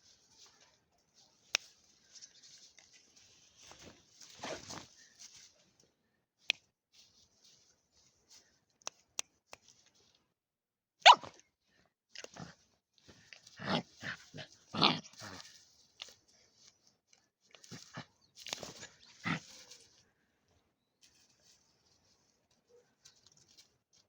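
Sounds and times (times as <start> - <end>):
puppy yapping: 11.0 - 11.4.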